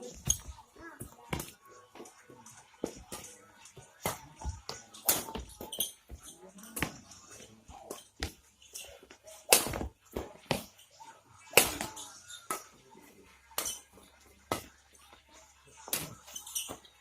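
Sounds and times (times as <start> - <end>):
rackets hitting shuttlecock: 0.0 - 1.6, 2.8 - 7.1, 7.8 - 10.8, 11.4 - 12.8, 13.5 - 14.8, 15.8 - 16.9.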